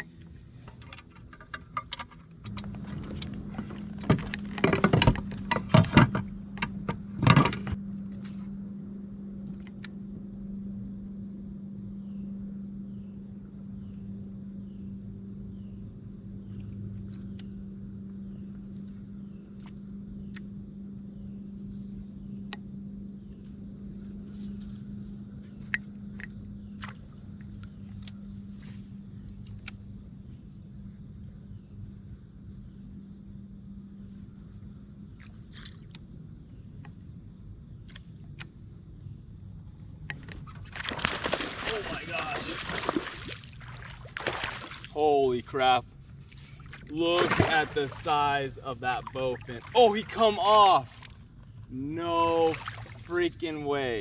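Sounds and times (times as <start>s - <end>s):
gear knocking and rattling: 0.6s - 7.8s.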